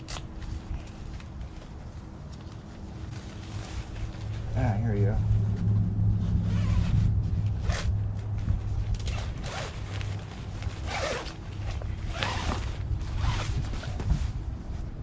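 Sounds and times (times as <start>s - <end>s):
zipper being pulled open: 6.5s - 7.9s, 8.9s - 14.1s.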